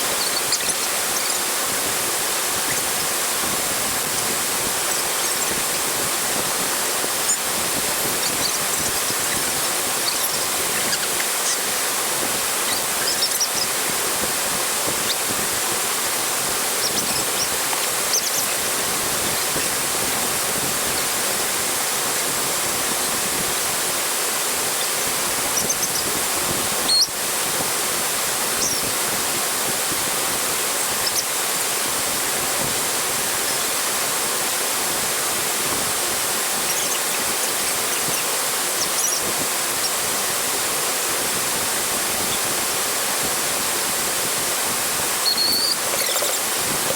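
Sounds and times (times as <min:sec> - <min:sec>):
faint high chirps: 0:00.0 - 0:01.6, 0:07.0 - 0:11.9, 0:12.6 - 0:13.8, 0:16.6 - 0:18.7, 0:36.6 - 0:40.0, 0:45.2 - 0:46.6
waterfall rushing: 0:00.0 - 0:46.9.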